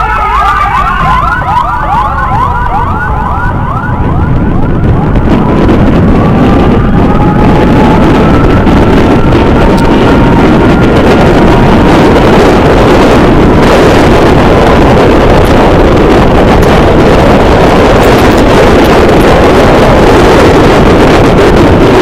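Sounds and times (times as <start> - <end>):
wind rushing over microphone: 0.0 - 22.0
motorcycle engine running at speed: 2.5 - 22.0.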